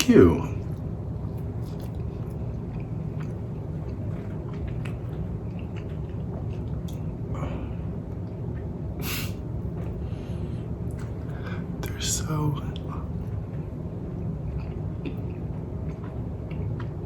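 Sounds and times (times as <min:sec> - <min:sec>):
steady low hum: 0:00.0 - 0:17.0
person chewing: 0:00.6 - 0:07.1, 0:14.5 - 0:17.0
short hiss: 0:09.0 - 0:09.4.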